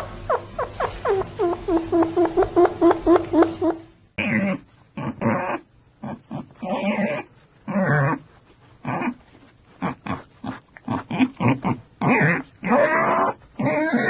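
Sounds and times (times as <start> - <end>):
animal grunting calls: 9.8 - 14.0.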